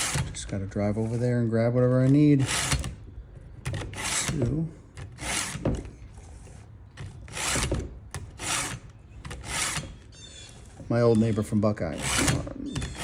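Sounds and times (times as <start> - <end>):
file rasping on chainsaw chain: 0.0 - 1.2, 2.1 - 3.0, 3.8 - 10.0, 11.0 - 13.0.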